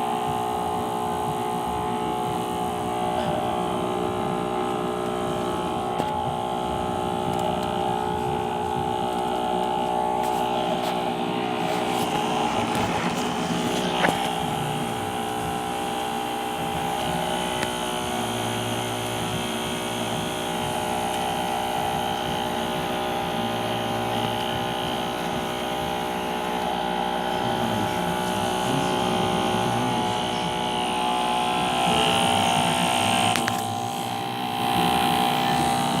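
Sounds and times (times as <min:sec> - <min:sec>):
electric fan motor humming: 0:00.0 - 0:36.0.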